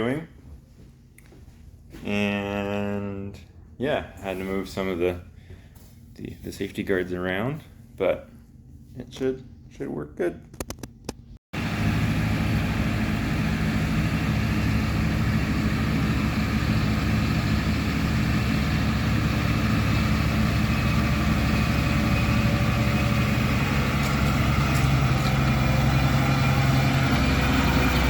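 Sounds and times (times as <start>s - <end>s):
heavy engine idling: 11.6s - 28.0s.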